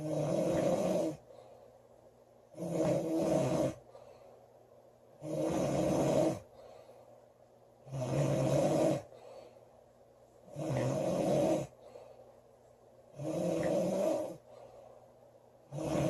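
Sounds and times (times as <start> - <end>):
girl snoring loudly: 0.0 - 1.2, 2.6 - 3.8, 5.2 - 6.5, 7.9 - 9.1, 10.6 - 11.8, 13.2 - 14.4, 15.7 - 16.0.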